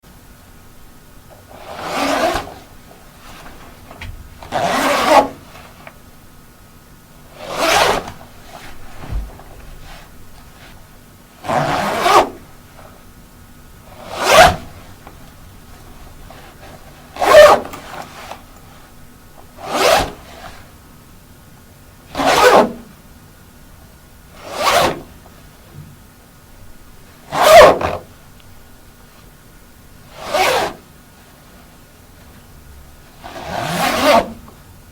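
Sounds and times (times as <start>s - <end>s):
jacket zipper zipping: 1.5s - 3.6s, 4.5s - 5.7s, 7.3s - 10.2s, 11.4s - 12.4s, 13.9s - 14.8s, 16.3s - 18.4s, 19.6s - 20.5s, 22.1s - 22.8s, 24.4s - 25.1s, 27.3s - 28.1s, 30.1s - 30.8s, 33.2s - 34.4s.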